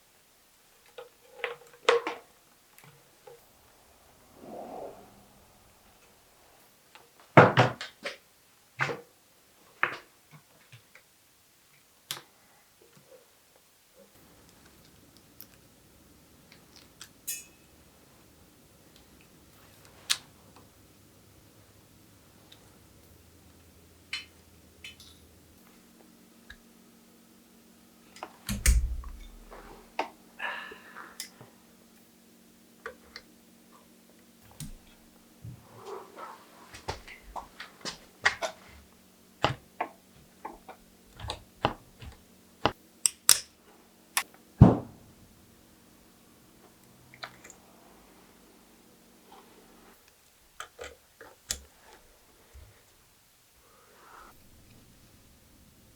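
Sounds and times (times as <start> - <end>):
heavy thump: 28.5 - 29.8, 44.6 - 45.0.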